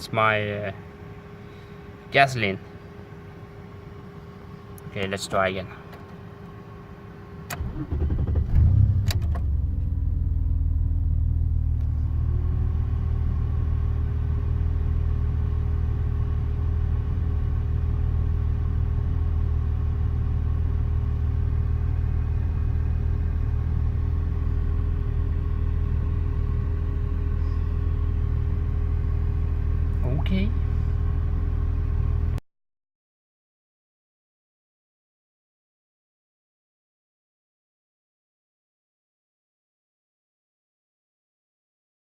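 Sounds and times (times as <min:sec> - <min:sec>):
car engine cranking: 0:07.5 - 0:10.5
car engine idling: 0:07.6 - 0:32.4
faint whine: 0:09.4 - 0:32.4.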